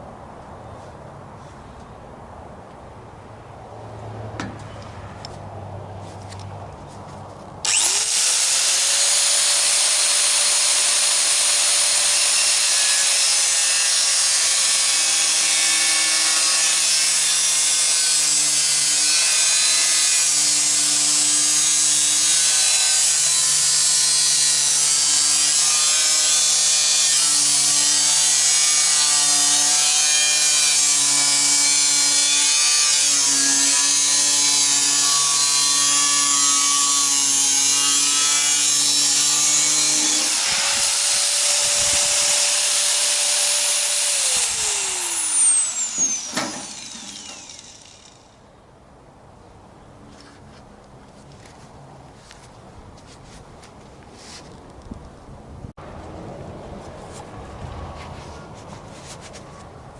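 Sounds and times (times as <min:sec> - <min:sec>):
power tool cutting sheet metal: 0:07.6 - 0:48.4.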